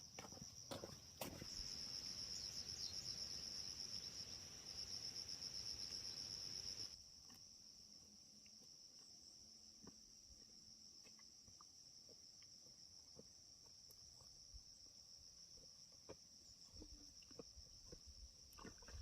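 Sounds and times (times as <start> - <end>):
crickets trilling: 0.0 - 7.0.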